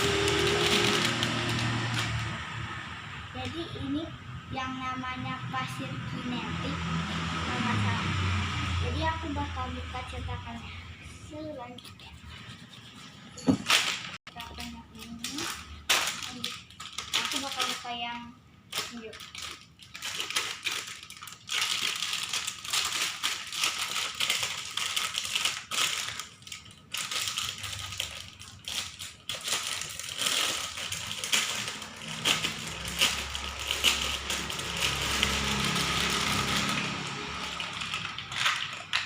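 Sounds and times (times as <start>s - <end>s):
plastic packaging crinkling: 0.0s - 2.4s, 13.7s - 39.0s.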